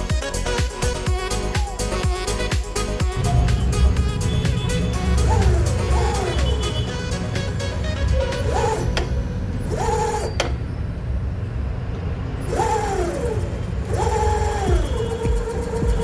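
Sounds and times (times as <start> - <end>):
electric scooter motor whining: 0.0 - 11.2, 12.4 - 16.0
click: 8.3 - 9.2, 9.8 - 10.6.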